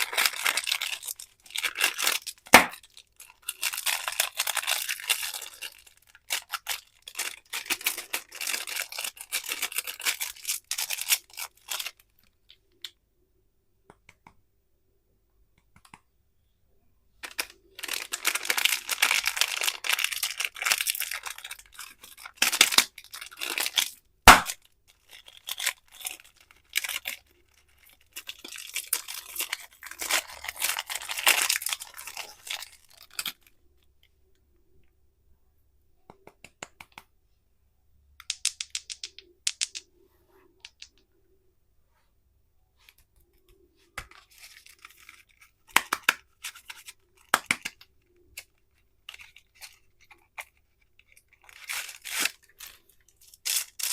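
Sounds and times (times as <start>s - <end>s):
plastic wrappers crinkling and tearing: 0.0s - 12.4s, 17.2s - 33.6s, 44.0s - 53.9s.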